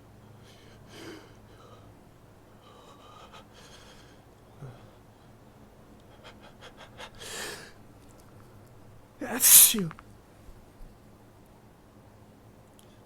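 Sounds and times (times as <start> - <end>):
person's hitching breaths: 2.6 - 5.0, 9.2 - 9.9
gasping inhale: 9.2 - 9.9.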